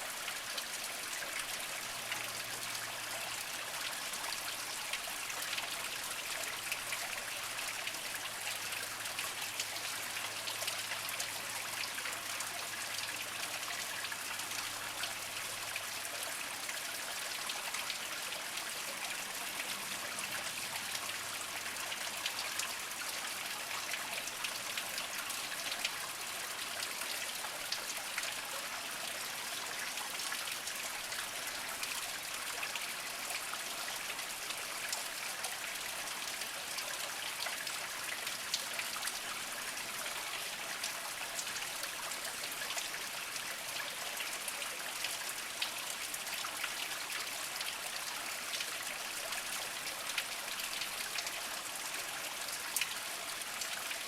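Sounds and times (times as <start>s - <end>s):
stream trickling over rocks: 0.0s - 54.0s.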